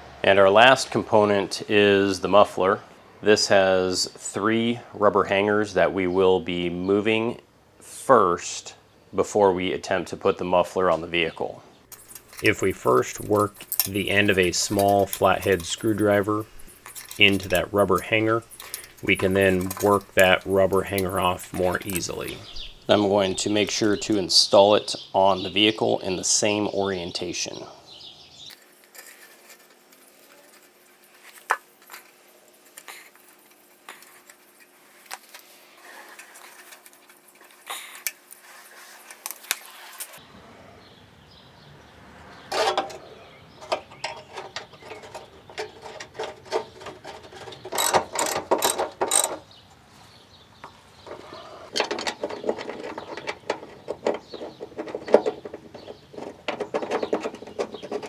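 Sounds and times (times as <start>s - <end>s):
hand tool clicks and knocks: 11.9s - 24.2s, 47.7s - 49.4s
rapid ratcheting clicks: 11.9s - 24.2s, 47.8s - 49.4s.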